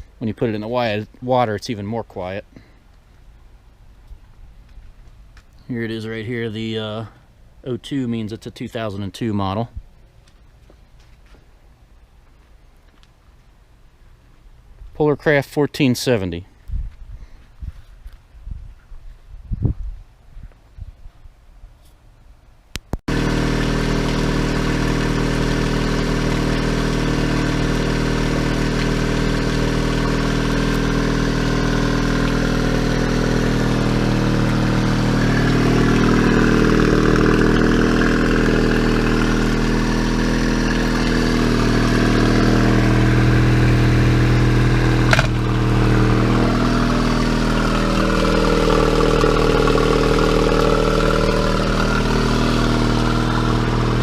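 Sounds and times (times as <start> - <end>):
outboard motor running: 23.1 - 54.0.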